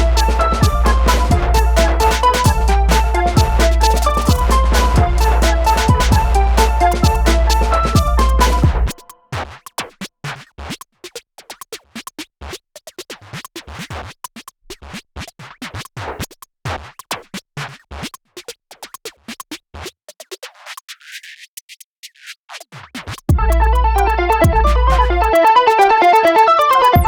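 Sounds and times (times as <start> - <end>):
electronic music with clicks: 0.0 - 9.3, 23.3 - 27.0.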